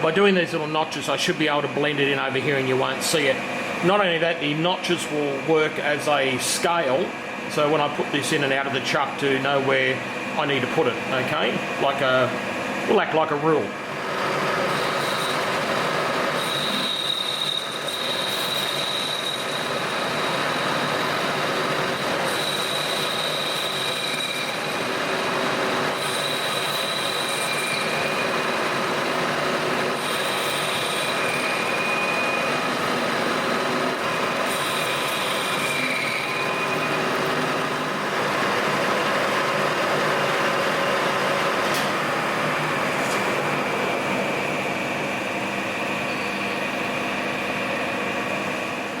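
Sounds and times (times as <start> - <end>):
metal lathe running: 0.0 - 49.0
high-pitched tool squeal: 14.6 - 21.0, 22.2 - 24.8, 25.8 - 28.6, 29.9 - 32.7, 34.4 - 37.5, 46.0 - 46.7.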